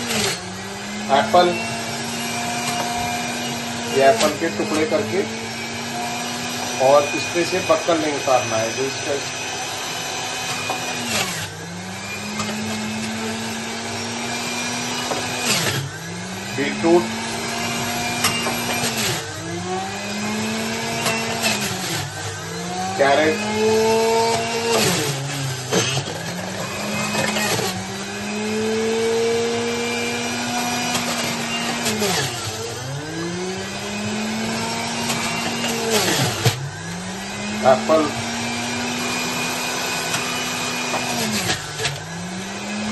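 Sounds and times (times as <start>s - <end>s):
electric juicer motor humming: 0.0s - 42.9s
juicer grinding fruit: 0.0s - 42.9s.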